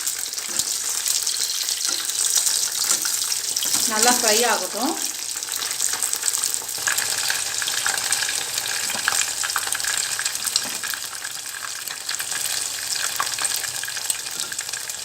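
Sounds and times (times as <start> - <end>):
fish sizzling in oil: 0.0 - 15.0.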